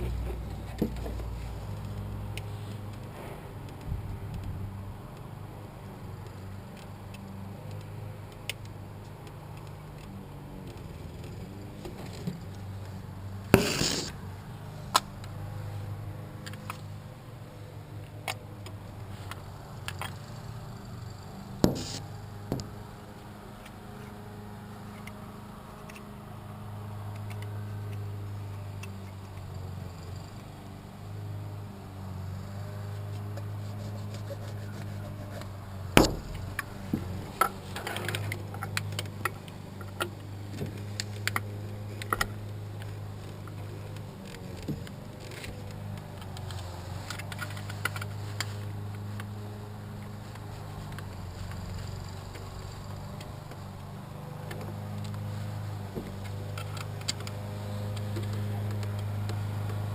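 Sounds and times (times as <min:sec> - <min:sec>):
hand tools clicking and knocking: 0:21.6 - 0:22.8, 0:33.4 - 0:42.4.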